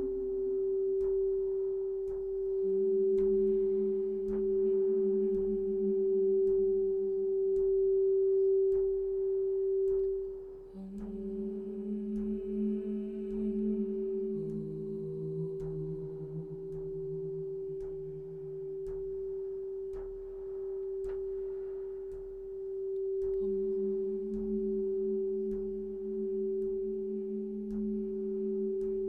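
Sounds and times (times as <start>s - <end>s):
lower drone tone: 0.0s - 29.0s
faint ticks: 9.8s - 11.4s, 15.4s - 24.6s
steady drone tone: 10.8s - 22.0s, 22.7s - 29.0s.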